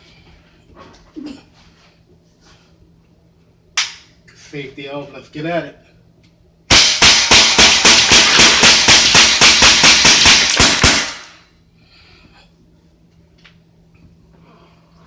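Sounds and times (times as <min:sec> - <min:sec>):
bb pistol rapid shots: 0:06.7 - 0:11.4.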